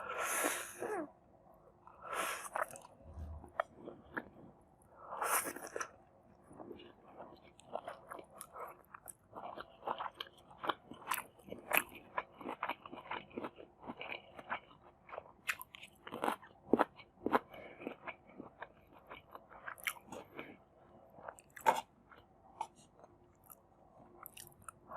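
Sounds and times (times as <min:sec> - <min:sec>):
crunchy chewing: 0:05.4 - 0:24.9.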